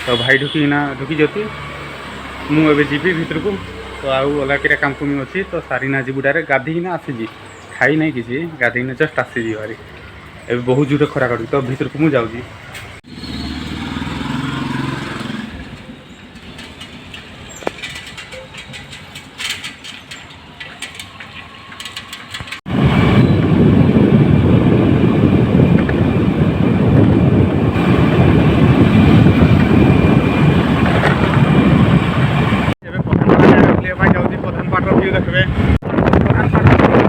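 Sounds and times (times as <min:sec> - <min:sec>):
vehicle noise: 0:00.0 - 0:37.0
wind buffeting microphone: 0:17.0 - 0:37.0.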